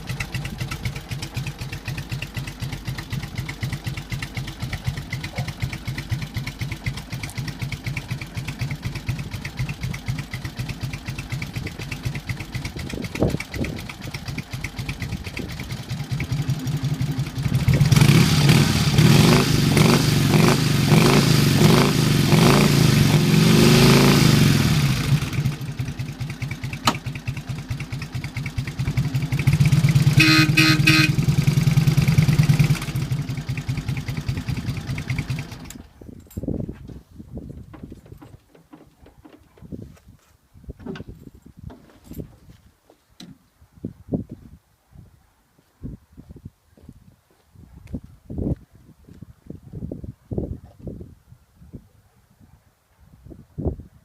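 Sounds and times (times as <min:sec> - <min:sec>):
motorcycle engine idling and revving: 0:00.0 - 0:36.9.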